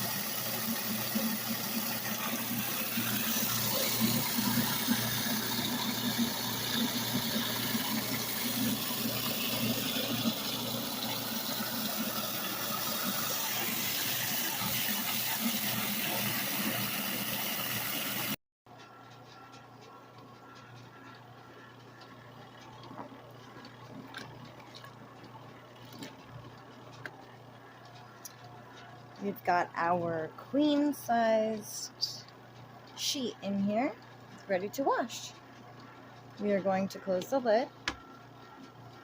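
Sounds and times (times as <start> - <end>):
water pouring into washing machine: 0.0 - 18.4, 23.5 - 26.6.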